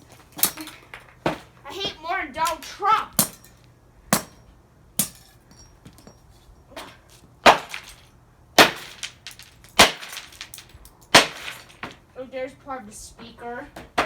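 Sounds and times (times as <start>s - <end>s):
hammer smashing plastic: 6.8s - 12.0s.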